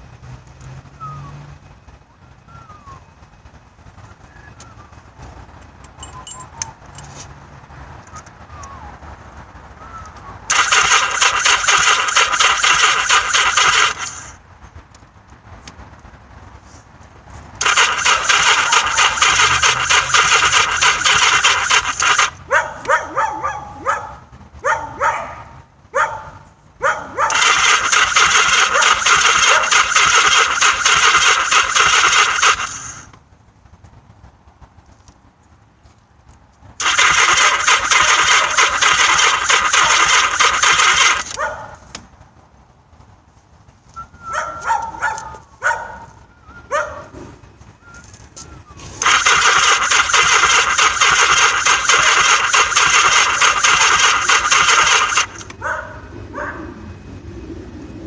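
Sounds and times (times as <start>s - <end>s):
engine cranking on starter: 10.5s - 14.4s, 17.6s - 22.4s, 27.3s - 33.1s, 36.8s - 41.4s, 49.0s - 55.6s
dog barking: 22.5s - 27.4s, 29.5s - 29.7s, 41.4s - 41.8s, 44.3s - 47.1s, 55.6s - 56.8s.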